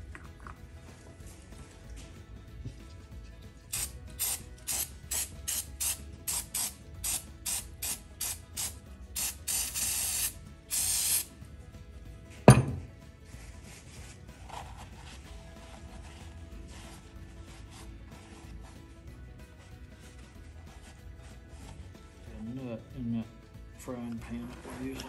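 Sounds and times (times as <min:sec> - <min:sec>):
aerosol spray hissing: 0:03.8 - 0:11.3
sharp knock with ring: 0:12.5 - 0:12.9.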